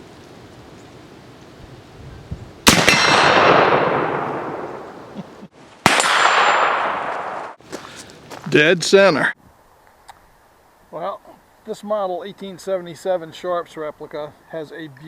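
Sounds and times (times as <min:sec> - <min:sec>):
rifle shots with echo: 0:02.6 - 0:05.2, 0:05.8 - 0:07.6.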